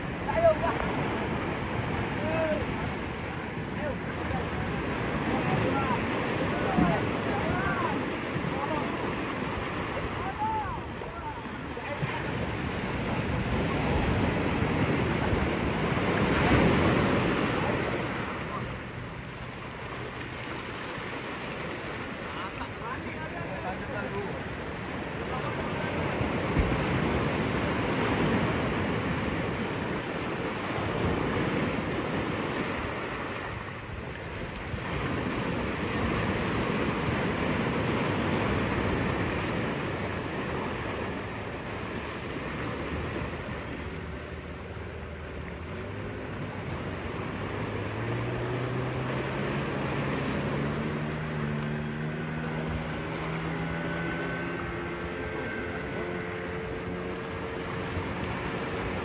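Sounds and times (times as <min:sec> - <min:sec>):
steady rushing noise: 0:00.0 - 0:59.0
engine rising in pitch: 0:47.2 - 0:58.1.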